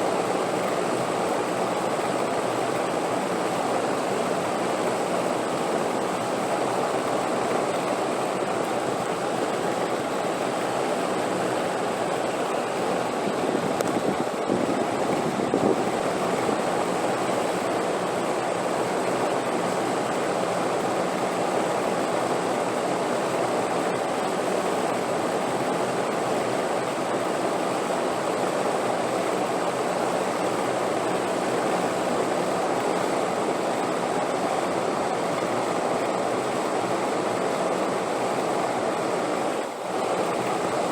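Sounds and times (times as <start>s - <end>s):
wind blowing: 9.6s - 17.8s.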